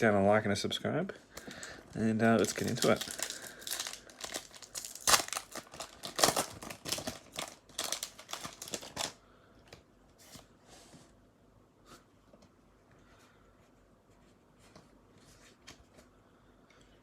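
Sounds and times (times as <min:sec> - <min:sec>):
foil wrapper crinkling and tearing: 0:02.3 - 0:09.2.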